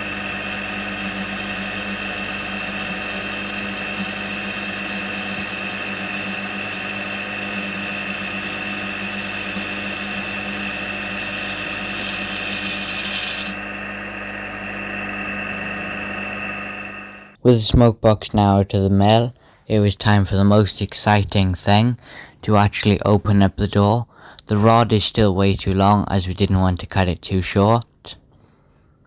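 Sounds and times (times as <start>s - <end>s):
milling machine high hiss: 0.0s - 17.4s
milling machine motor hum: 0.0s - 17.4s.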